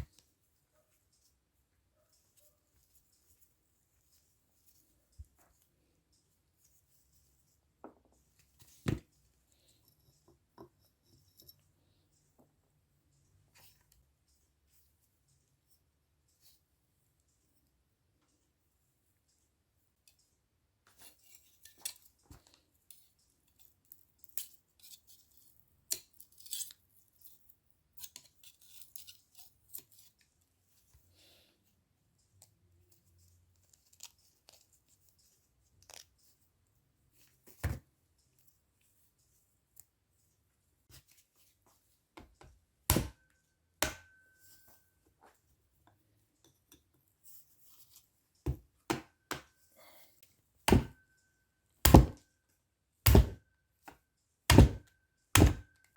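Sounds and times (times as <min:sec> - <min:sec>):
tools clicking and scraping metal: 0:09.5 - 0:12.3, 0:20.9 - 0:30.4.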